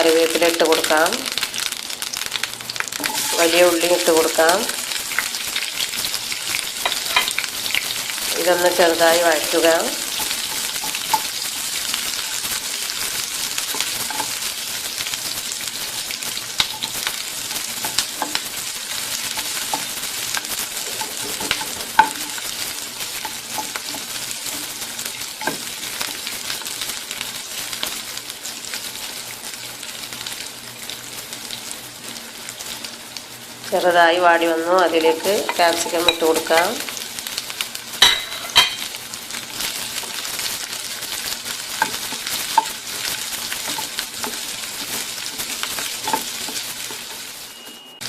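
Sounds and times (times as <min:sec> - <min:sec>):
onion sizzling in hot oil: 0:00.0 - 0:48.0
utensil scraping a pan: 0:03.0 - 0:03.7, 0:06.7 - 0:07.5, 0:10.0 - 0:14.5, 0:16.6 - 0:26.8, 0:35.0 - 0:37.0, 0:41.7 - 0:47.9.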